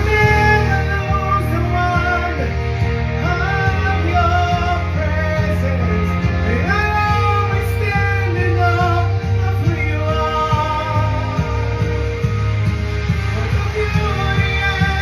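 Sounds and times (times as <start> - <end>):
person singing long notes: 0.0 - 12.4
band with low bass: 0.0 - 15.0.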